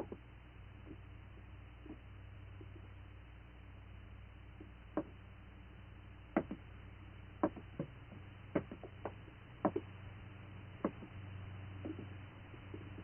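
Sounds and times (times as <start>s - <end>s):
faint steady hum: 0.0s - 13.0s
soft knocks: 6.4s - 6.6s, 7.4s - 9.9s.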